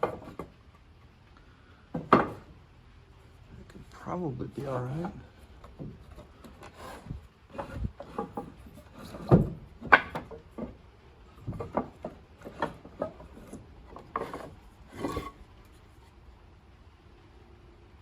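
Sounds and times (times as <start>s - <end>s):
wooden offcuts knocking and scraping: 0.0s - 1.1s, 1.9s - 2.6s, 3.6s - 16.2s.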